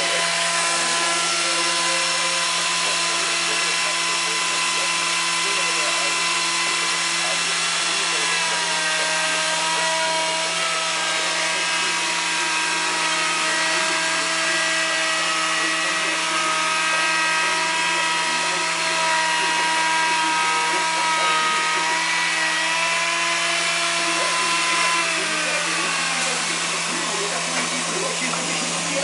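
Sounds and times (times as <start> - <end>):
wood lathe motor whining: 0.0 - 29.0.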